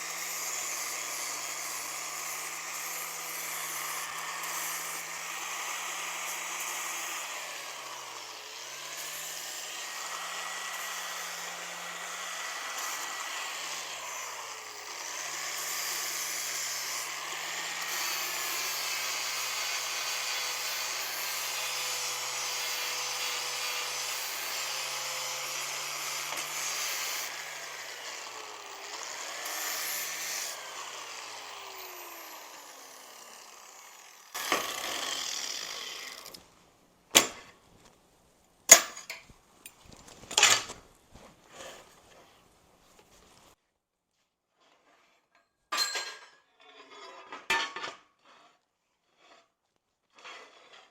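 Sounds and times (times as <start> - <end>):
power tool motor cutting metal: 0.0 - 36.4.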